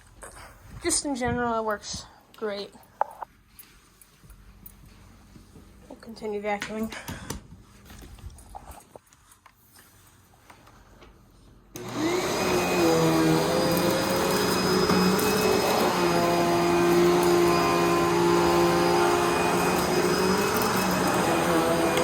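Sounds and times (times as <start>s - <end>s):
vacuum cleaner motor whining: 11.7s - 22.0s.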